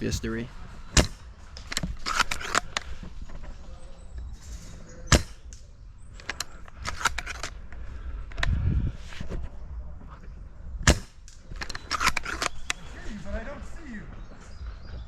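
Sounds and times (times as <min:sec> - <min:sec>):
airsoft guns firing: 0:05.1 - 0:05.6, 0:10.8 - 0:12.7
loud crack: 0:05.1 - 0:05.7, 0:10.8 - 0:12.6.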